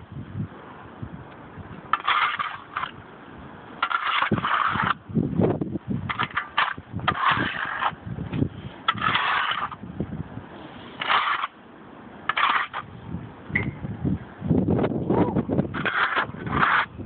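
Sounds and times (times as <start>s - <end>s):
snow shovel scraping sidewalk: 1.8s - 13.1s, 14.8s - 17.0s.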